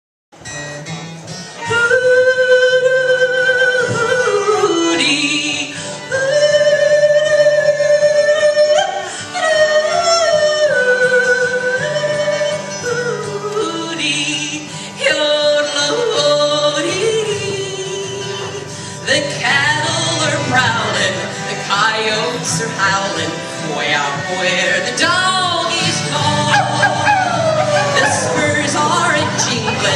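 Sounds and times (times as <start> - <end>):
bluegrass band playing: 0.4 - 29.9
person yodeling: 25.6 - 29.9.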